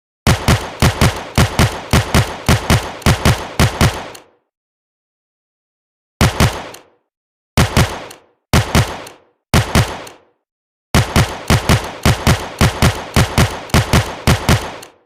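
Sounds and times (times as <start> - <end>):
revolver gunshots in pairs: 0.3 - 4.3, 6.2 - 6.9, 7.6 - 10.3, 11.0 - 15.0.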